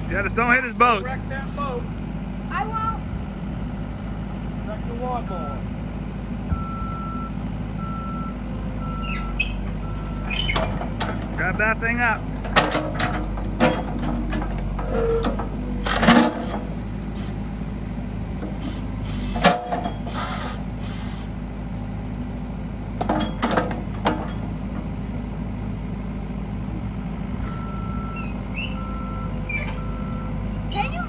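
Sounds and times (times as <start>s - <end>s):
hydraulic hissing: 0.0s - 2.0s, 14.0s - 17.5s, 18.5s - 21.4s
diesel engine running: 0.0s - 31.0s.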